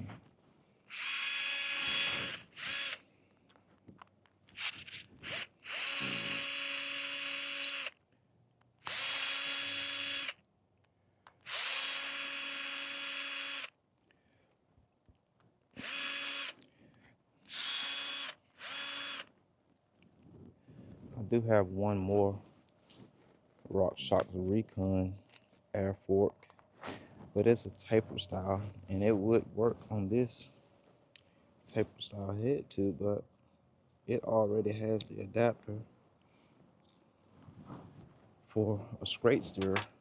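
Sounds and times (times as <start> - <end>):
power drill running: 0.9 - 3.0, 4.6 - 8.0, 8.8 - 10.4, 11.4 - 13.7, 15.8 - 16.6, 17.5 - 19.3.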